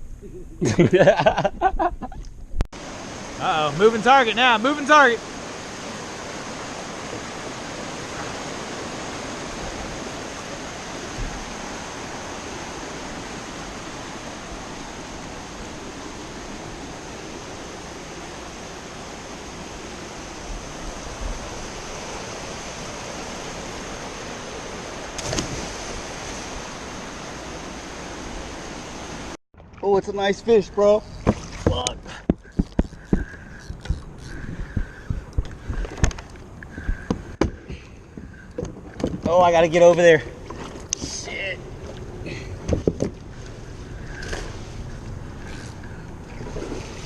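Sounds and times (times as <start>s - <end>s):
soft low thumps: 31.3s - 36.0s.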